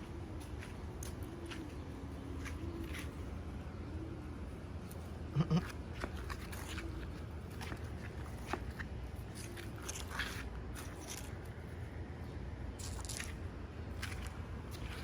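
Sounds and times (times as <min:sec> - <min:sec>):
low steady hum: 0:00.0 - 0:15.0
puppy chewing: 0:05.6 - 0:11.5.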